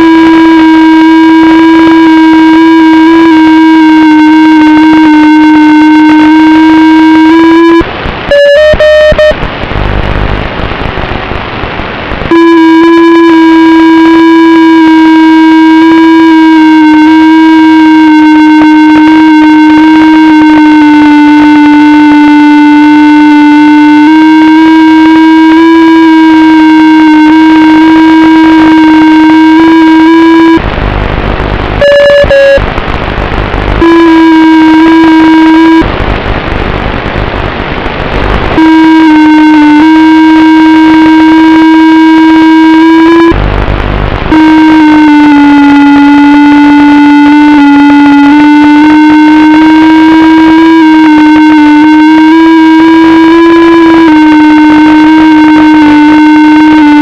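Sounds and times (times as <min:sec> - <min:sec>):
loud hissing noise: 0:27.2 - 0:57.0.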